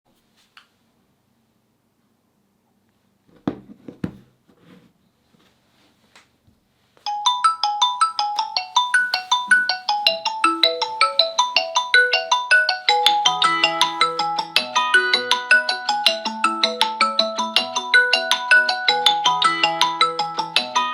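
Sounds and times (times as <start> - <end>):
phone ringtone melody: 7.1 - 20.9.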